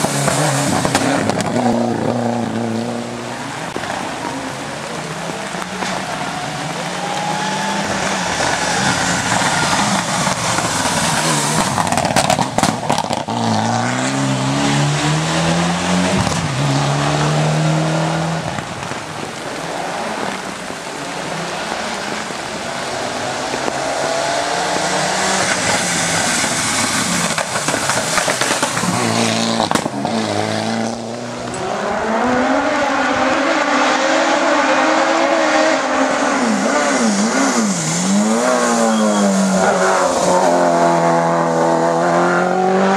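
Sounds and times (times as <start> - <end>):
race car engine revving: 0.0 - 42.9
tyre squeal: 36.9 - 40.6.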